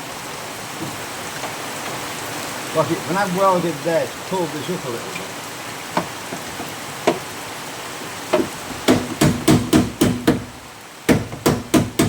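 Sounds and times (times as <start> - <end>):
hammer knocking on steel panel: 6.0 - 7.3, 8.3 - 12.0.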